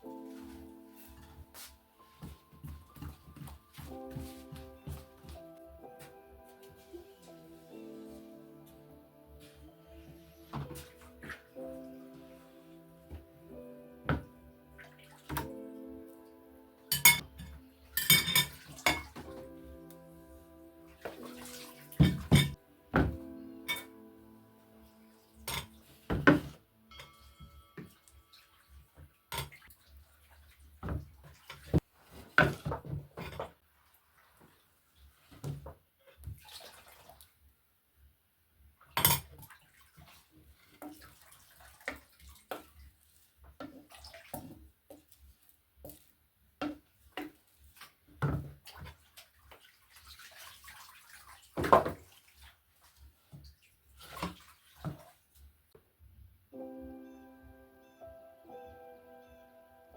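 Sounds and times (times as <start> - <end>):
water splashing: 14.1 - 15.6, 16.9 - 19.5, 20.8 - 22.6, 36.3 - 37.4, 39.3 - 45.1, 46.6 - 55.4
dishes and pots clinking: 16.9 - 19.5, 21.1 - 24.0, 25.4 - 29.6, 32.4 - 33.6, 39.0 - 39.4.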